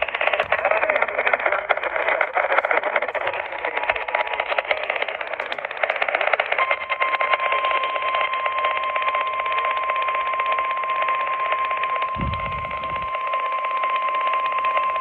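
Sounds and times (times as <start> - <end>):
radio static hiss and crackle: 0.0 - 7.4
steady high alarm tone: 0.0 - 15.0.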